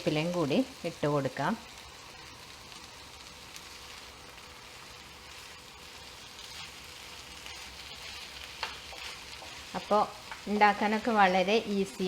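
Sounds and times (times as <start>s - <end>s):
meat sizzling in a pan: 0.0s - 12.0s.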